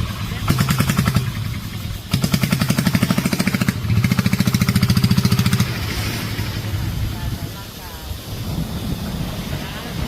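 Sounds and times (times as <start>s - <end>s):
small boat engine pulsing: 0.0s - 10.0s.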